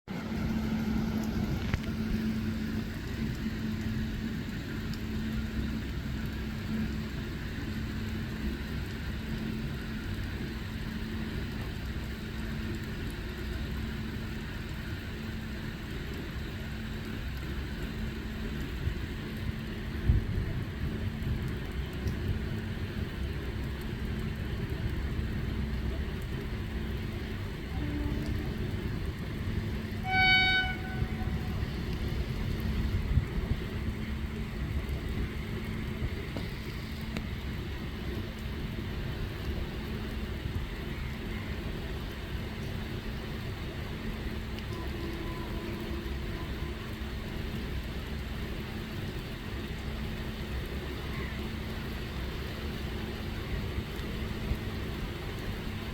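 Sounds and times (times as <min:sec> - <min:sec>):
train rumbling: 0:00.1 - 0:03.8, 0:19.9 - 0:40.8, 0:41.4 - 0:47.7
heavy rain: 0:00.1 - 0:55.9
train horn blast: 0:27.5 - 0:33.2, 0:44.6 - 0:47.0.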